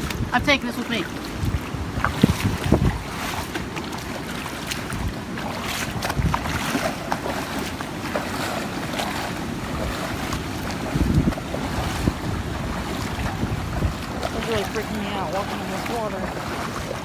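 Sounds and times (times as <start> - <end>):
wading through floodwater splashing: 0.0 - 17.0
wind buffeting microphone: 0.0 - 17.0.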